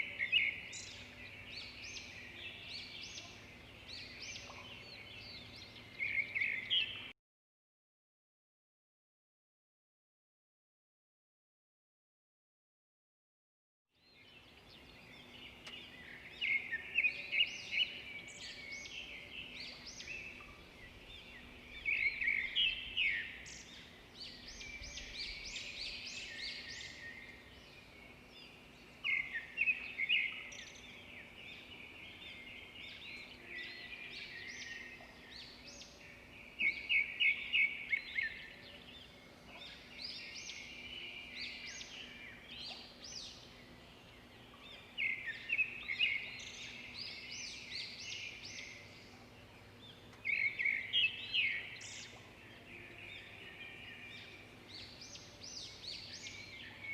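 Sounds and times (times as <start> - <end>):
birds twittering: 0.0 - 7.1, 14.0 - 56.9.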